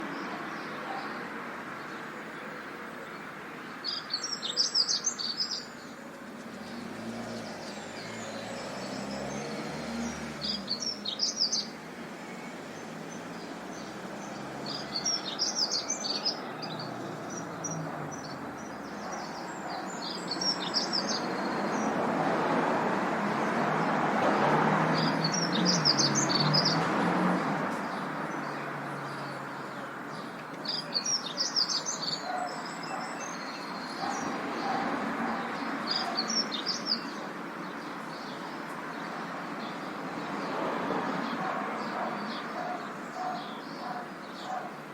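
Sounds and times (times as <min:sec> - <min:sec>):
distant traffic hum: 0:00.0 - 0:44.9
small birds chirping: 0:00.0 - 0:44.9
vehicle passing: 0:06.4 - 0:44.8.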